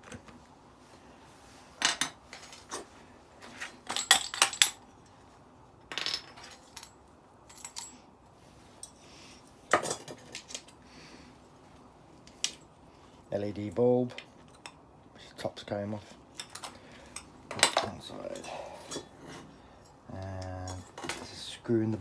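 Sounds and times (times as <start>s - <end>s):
metal parts clinking: 3.8s - 4.9s, 5.9s - 8.0s, 16.4s - 19.1s.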